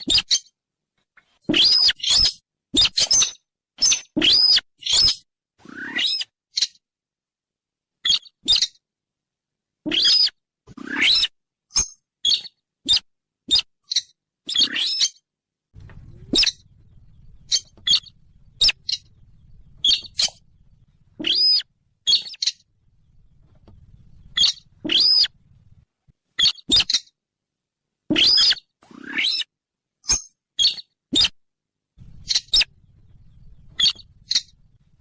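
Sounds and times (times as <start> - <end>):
bird chirps and squeals: 0.0 - 0.6, 1.5 - 6.8, 8.0 - 8.8, 9.9 - 25.8, 26.4 - 27.2, 28.1 - 31.4, 32.0 - 35.0
faint low hum: 15.8 - 26.0, 32.0 - 35.0.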